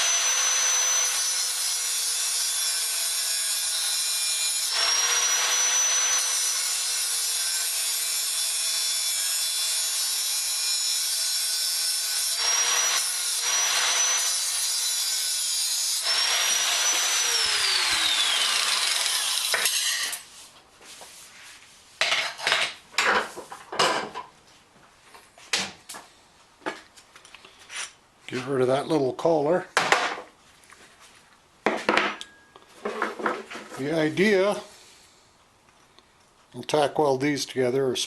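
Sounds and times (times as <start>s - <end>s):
power tool cutting metal: 0.0s - 20.2s.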